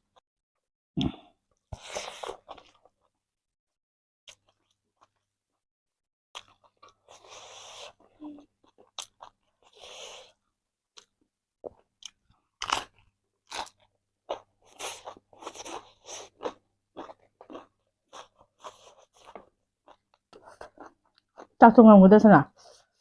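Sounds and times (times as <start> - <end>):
person crunching food: 6.4 - 10.0, 11.7 - 21.6.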